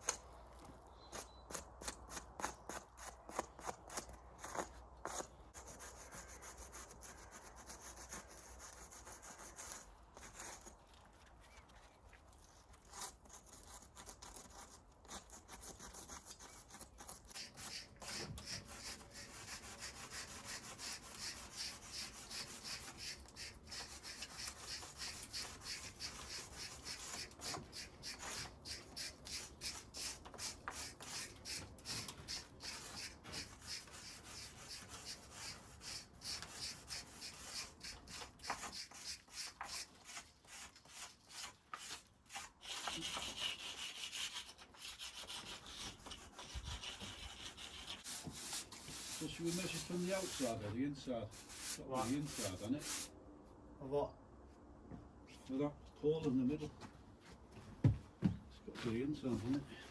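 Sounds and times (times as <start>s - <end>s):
scraping strokes on hard surface: 15.6s - 53.1s.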